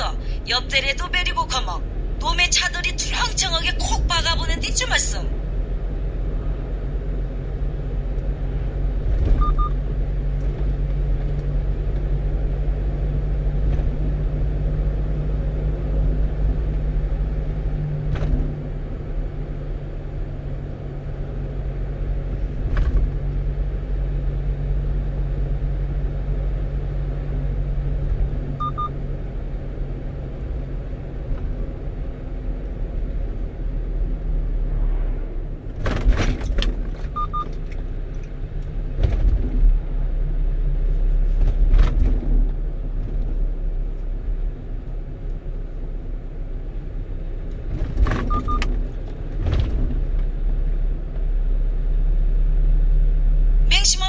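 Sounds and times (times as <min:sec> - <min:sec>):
road rumble: 0:00.0 - 0:54.0
truck engine drone: 0:00.0 - 0:54.0.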